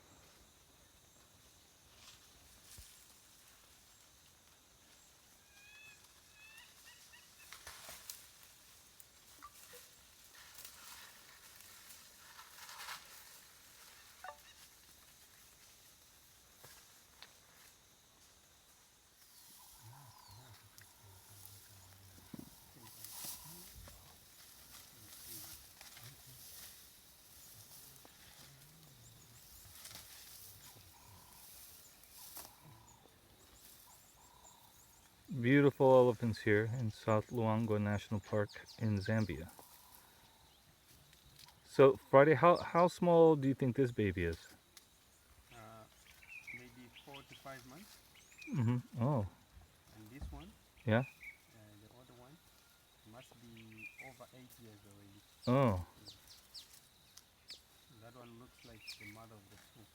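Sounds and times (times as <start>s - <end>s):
faint bird chirps: 5.0s - 7.6s, 14.0s - 14.9s, 19.2s - 23.7s, 26.2s - 35.4s, 44.9s - 59.9s
soft rustles and crackles: 6.8s - 18.4s, 19.2s - 35.3s
faint high chirps: 14.1s - 14.7s
short calls: 41.6s - 44.5s, 46.3s - 49.3s.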